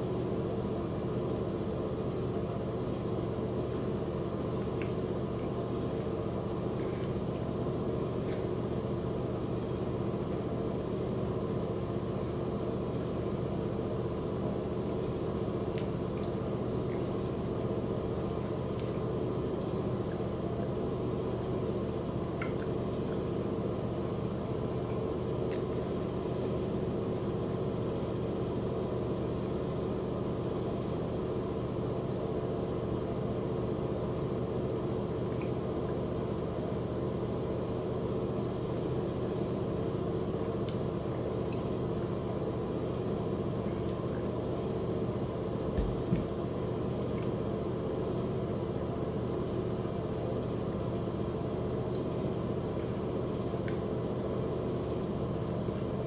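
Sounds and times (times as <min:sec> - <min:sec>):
steady low hum: 0:00.0 - 0:56.0.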